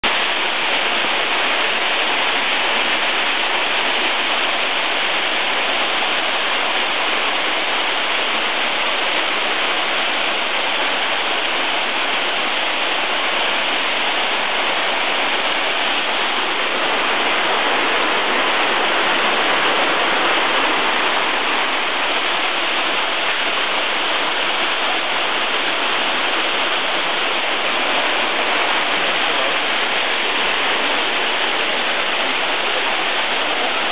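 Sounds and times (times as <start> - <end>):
waterfall pouring: 0.0 - 33.9.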